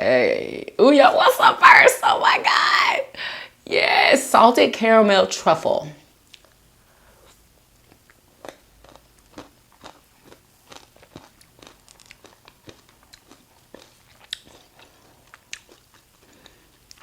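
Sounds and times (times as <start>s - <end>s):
quiet chewing: 6.2s - 17.0s.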